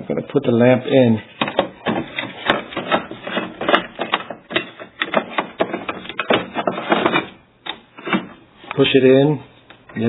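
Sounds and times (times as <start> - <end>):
hard plastic clicking and knocking: 1.4 - 8.4.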